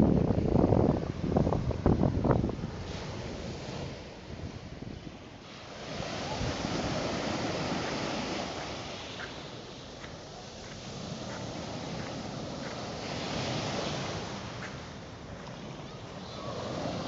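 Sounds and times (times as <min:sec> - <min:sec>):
sea waves washing on beach: 0:00.0 - 0:17.0
wind buffeting microphone: 0:00.0 - 0:17.0.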